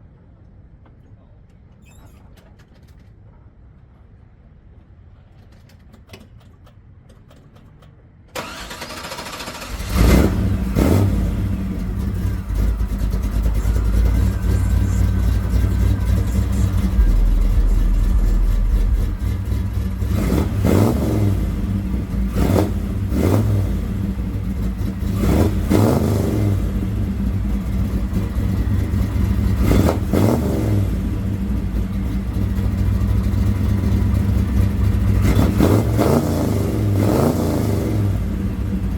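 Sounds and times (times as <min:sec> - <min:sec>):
car engine starting and revving: 0:08.3 - 0:38.9.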